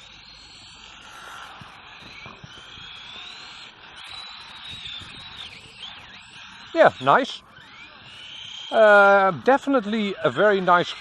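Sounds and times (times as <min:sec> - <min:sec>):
rc car motor whining: 0:00.0 - 0:11.0.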